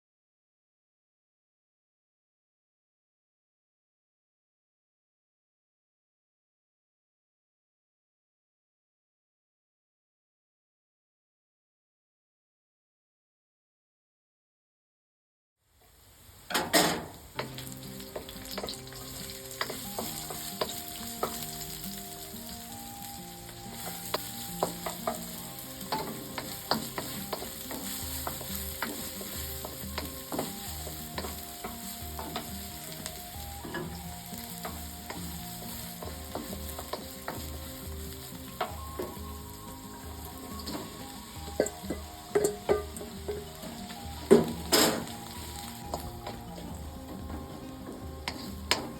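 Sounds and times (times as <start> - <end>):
food sizzling in a pan: 15.7 - 48.9
utensil scraping a pan: 16.6 - 37.8.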